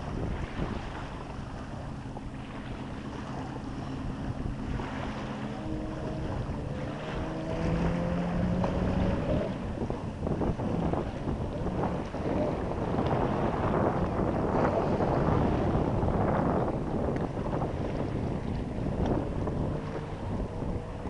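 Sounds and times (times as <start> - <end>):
jet ski engine running: 0.0 - 21.0
wind buffeting microphone: 0.0 - 21.0.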